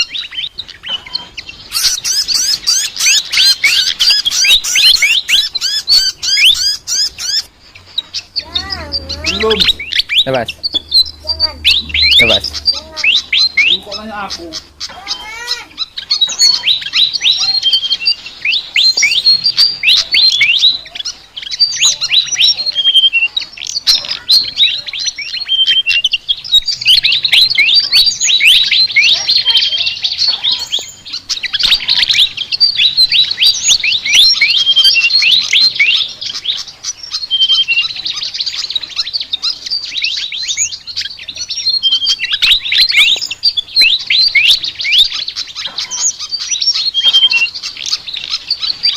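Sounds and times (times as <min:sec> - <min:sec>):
bird chattering song: 0:00.0 - 0:48.9.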